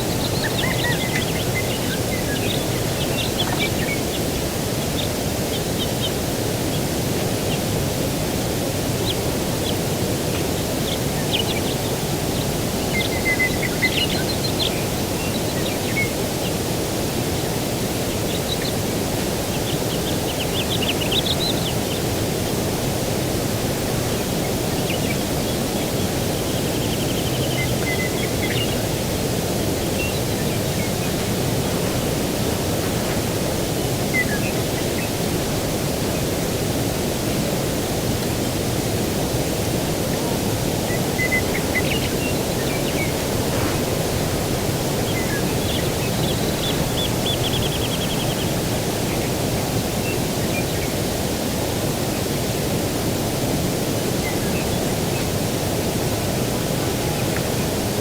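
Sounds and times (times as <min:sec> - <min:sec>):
small birds chirping: 0:00.0 - 0:08.0, 0:08.6 - 0:51.8
distant surf: 0:00.0 - 0:58.0
breeze rushing: 0:28.0 - 0:50.4.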